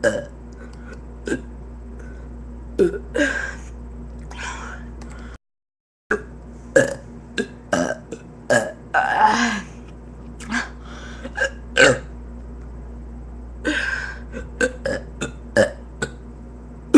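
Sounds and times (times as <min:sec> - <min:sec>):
person belching: 0:00.0 - 0:00.3, 0:01.2 - 0:01.5, 0:02.8 - 0:03.6, 0:06.1 - 0:09.7, 0:11.3 - 0:12.1, 0:13.7 - 0:16.2.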